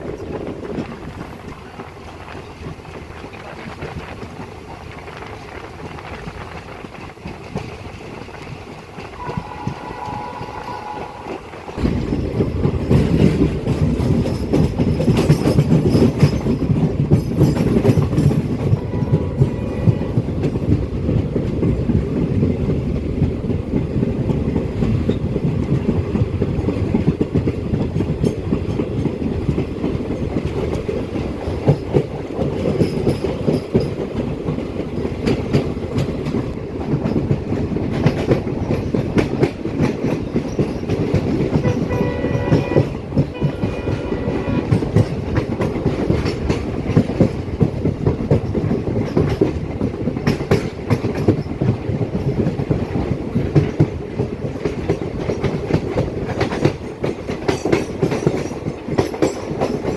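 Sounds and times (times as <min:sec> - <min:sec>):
train wheels clickety-clack on rails: 0:00.0 - 0:59.9
faint train horn: 0:09.0 - 0:11.9, 0:18.5 - 0:20.6, 0:41.5 - 0:45.1.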